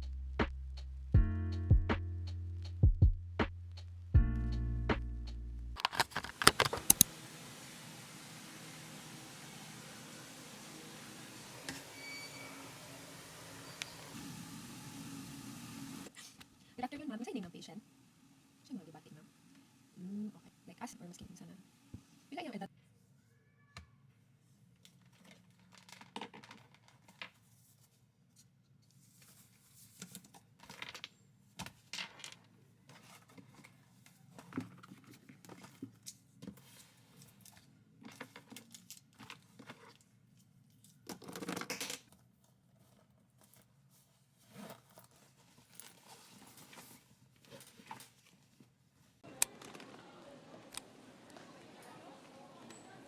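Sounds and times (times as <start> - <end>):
handling clicks and rustles: 5.8 - 7.1.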